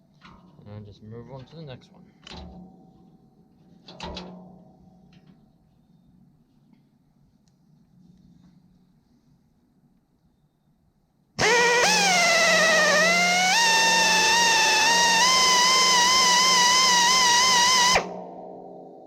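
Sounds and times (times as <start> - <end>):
grinding wheel squealing on blade: 11.4 - 18.0.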